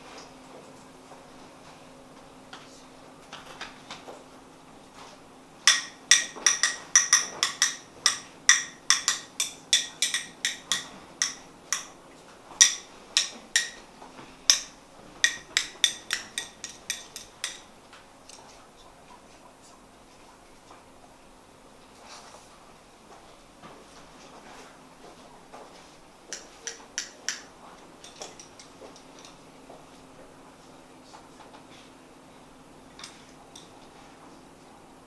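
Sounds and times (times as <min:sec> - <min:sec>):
sharp metallic taps: 0:05.7 - 0:12.0, 0:12.6 - 0:13.9, 0:14.5 - 0:17.7, 0:26.3 - 0:27.5.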